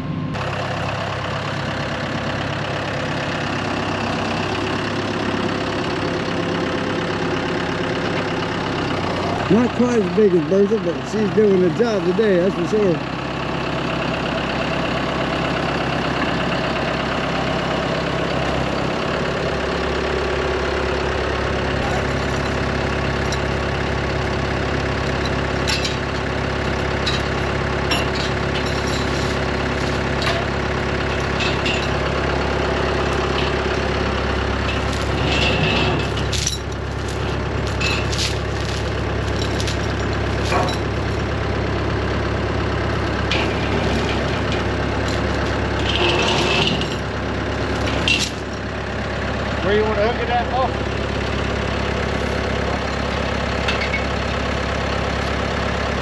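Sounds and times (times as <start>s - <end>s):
tractor engine idling: 0.0s - 56.0s
sharp metallic clanks and knocks: 25.1s - 32.2s, 33.0s - 41.4s, 43.0s - 48.6s, 52.8s - 54.5s.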